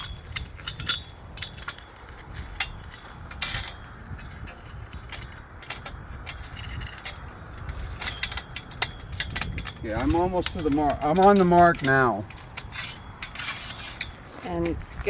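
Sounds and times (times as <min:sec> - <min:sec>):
metal pipes clicking and knocking: 0:00.0 - 0:14.9.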